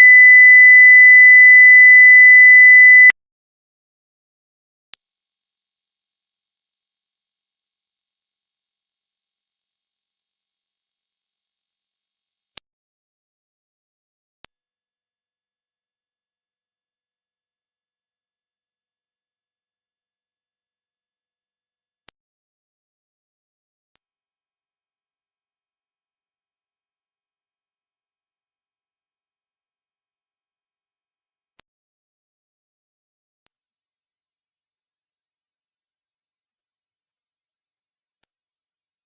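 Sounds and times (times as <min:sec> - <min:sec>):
steady high-pitched tone: 0:24.0 - 0:31.6
very high steady tone: 0:24.0 - 0:31.6.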